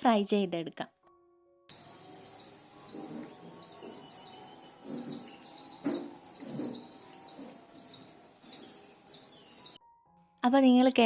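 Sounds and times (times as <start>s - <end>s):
small birds chirping: 1.7s - 9.8s.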